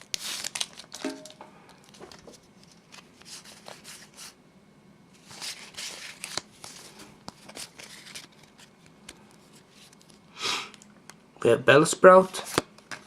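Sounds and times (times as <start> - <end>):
cards sliding and rustling: 0.0 - 1.0, 1.8 - 4.4, 5.2 - 10.2, 12.3 - 13.0
foil wrapper crinkling: 0.0 - 3.8, 5.3 - 8.8.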